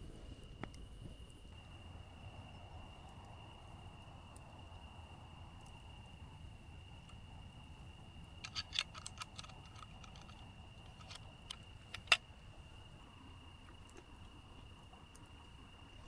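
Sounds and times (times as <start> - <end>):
small sharp clicks: 8.4 - 12.4.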